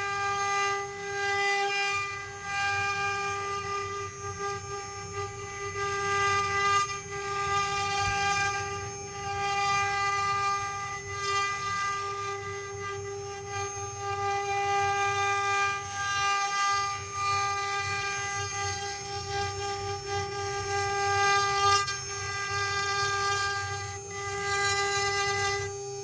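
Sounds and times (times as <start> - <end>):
rumble of bits cutting wood: 0.0 - 25.9
router spindles whining: 0.0 - 26.0.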